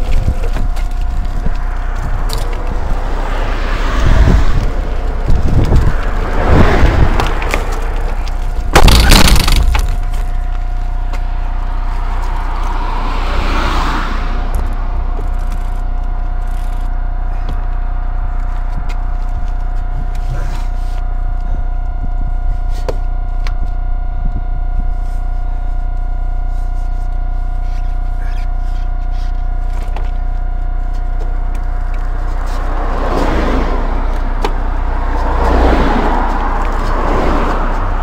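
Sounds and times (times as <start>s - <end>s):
bicycle low rumble: 0.0s - 38.0s
motor whine: 0.0s - 38.0s
rushing noise: 1.0s - 15.7s.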